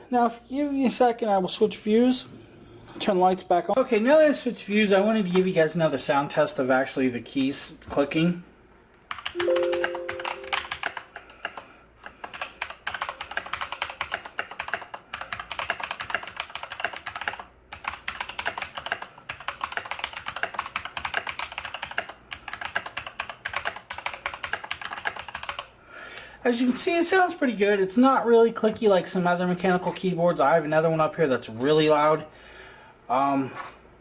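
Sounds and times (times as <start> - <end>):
mechanical keyboard typing: 9.1 - 25.7.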